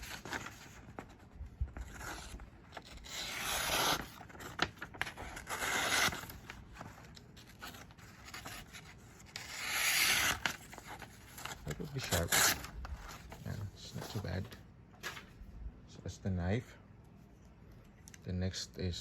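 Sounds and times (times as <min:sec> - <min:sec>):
paper rustling: 0:00.0 - 0:15.5
knife slicing paper: 0:01.8 - 0:06.6, 0:08.2 - 0:12.7.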